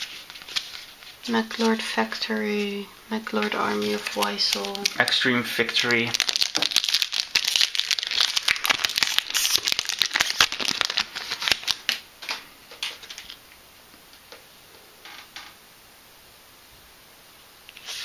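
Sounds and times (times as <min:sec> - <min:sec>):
foil wrapper crinkling: 0:00.0 - 0:02.2, 0:03.2 - 0:13.4
cards being handled clicking: 0:03.4 - 0:05.2.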